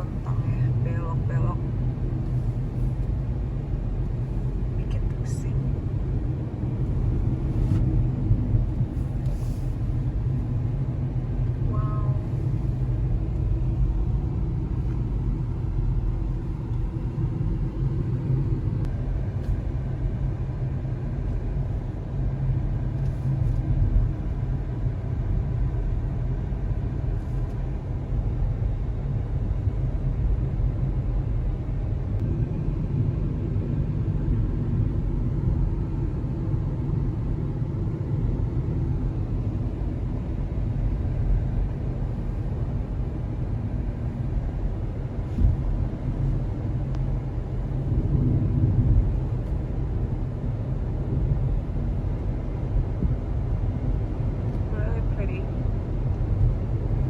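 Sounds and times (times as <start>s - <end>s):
car tyres and engine rumble: 0.0s - 57.0s.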